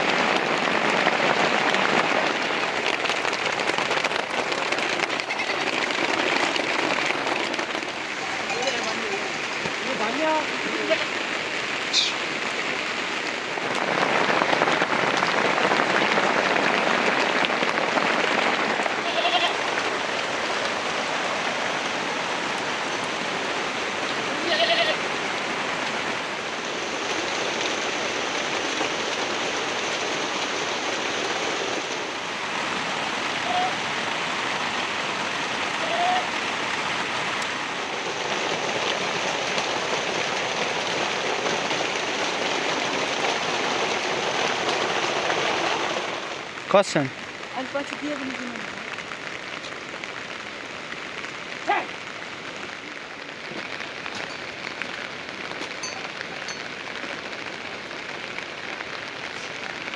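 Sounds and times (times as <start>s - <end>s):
heavy rain falling: 0.0s - 59.9s
animal bleating: 5.1s - 6.0s, 19.0s - 19.6s, 24.3s - 25.0s, 35.8s - 36.3s.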